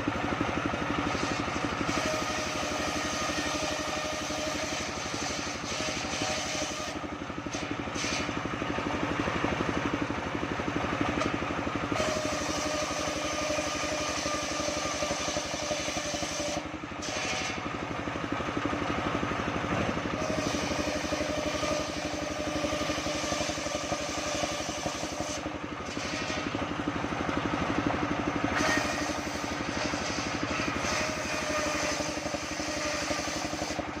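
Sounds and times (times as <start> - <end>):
band sawmill motor humming: 0.0 - 34.0.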